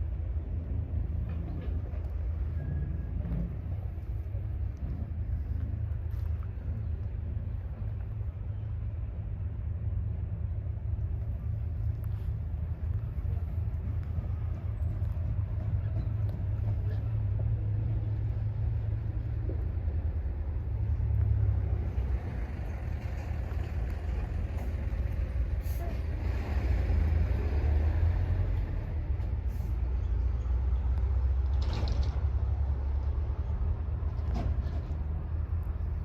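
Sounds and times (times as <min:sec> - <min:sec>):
combine harvester engine rumbling: 0:00.0 - 0:36.0.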